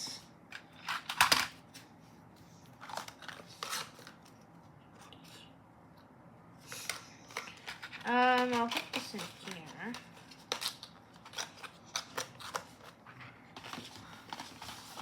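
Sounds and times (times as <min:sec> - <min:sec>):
packaging rustling: 0:02.6 - 0:04.4, 0:06.6 - 0:15.0.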